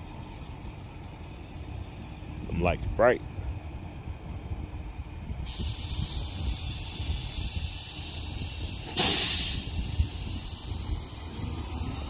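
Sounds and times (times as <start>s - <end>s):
compressed air hissing: 5.4s - 12.0s
loud blast of air: 5.4s - 12.0s.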